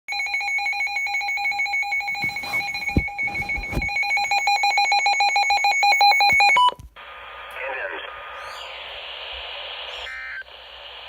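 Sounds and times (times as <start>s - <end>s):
weather radio alarm beeping: 0.1s - 6.8s
dull thumps: 2.1s - 4.3s.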